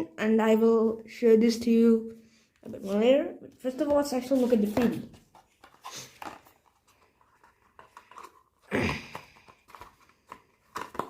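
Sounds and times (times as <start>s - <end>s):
packaging rustling: 4.2s - 11.0s
packaging crinkling and clicking: 9.2s - 11.0s.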